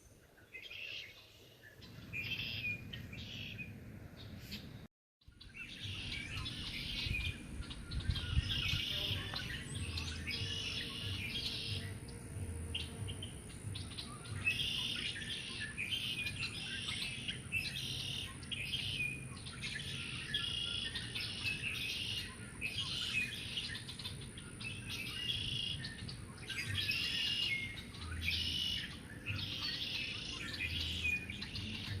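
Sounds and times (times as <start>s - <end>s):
songbird singing: 0.0s - 32.0s.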